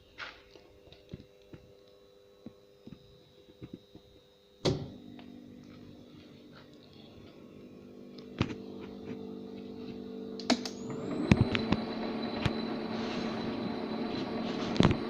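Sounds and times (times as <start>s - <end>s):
lathe humming: 5.0s - 15.0s.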